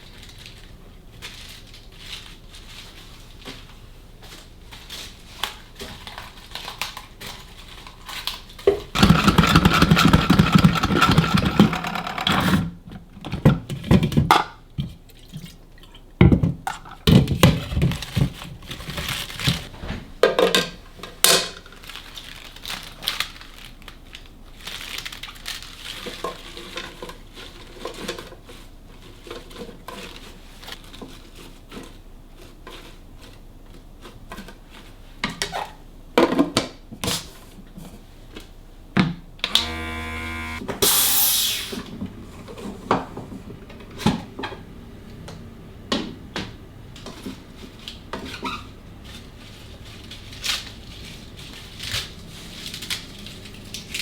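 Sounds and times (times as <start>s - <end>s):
short buzzing hum: 39.4s - 46.9s
brief hiss: 40.7s - 42.0s.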